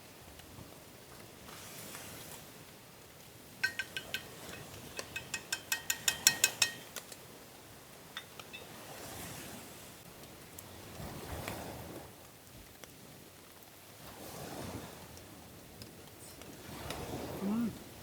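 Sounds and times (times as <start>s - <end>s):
utensil clinking on cookware: 3.6s - 7.2s.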